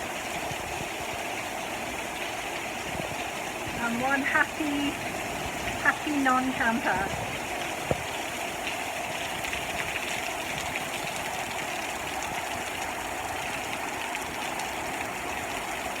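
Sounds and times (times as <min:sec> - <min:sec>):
heavy rain falling: 0:00.0 - 0:16.0.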